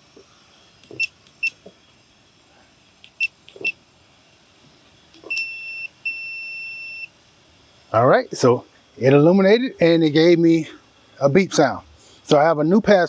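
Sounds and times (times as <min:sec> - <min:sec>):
keypad beeps: 0:05.2 - 0:07.1.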